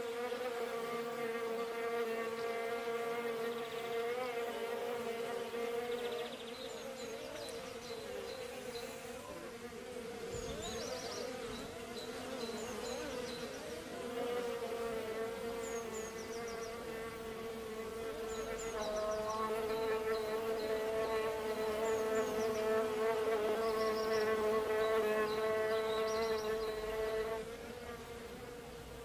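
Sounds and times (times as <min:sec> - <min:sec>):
bees buzzing: 0:00.0 - 0:29.0.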